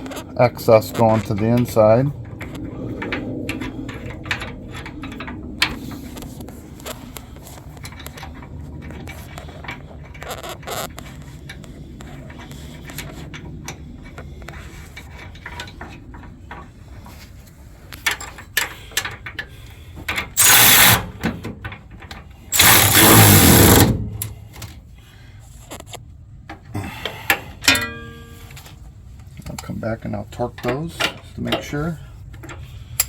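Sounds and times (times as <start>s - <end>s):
impact wrench bursts: 20.4s - 21.3s, 22.5s - 24.5s
ratchet clicks: 20.4s - 21.3s, 22.5s - 24.4s
tools clattering on metal: 27.6s - 28.8s.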